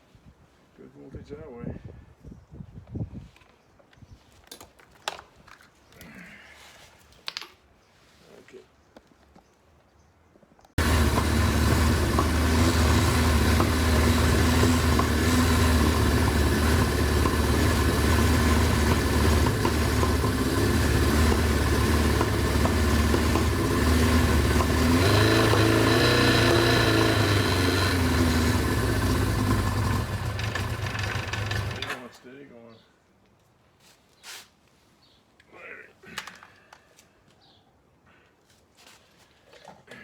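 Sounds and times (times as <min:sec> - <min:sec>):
motorcycle engine idling and revving: 0:10.8 - 0:32.1.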